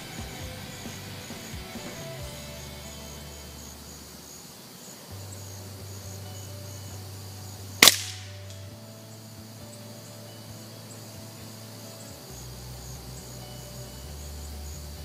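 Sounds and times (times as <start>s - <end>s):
suppressed gunshot: 7.8s - 8.6s.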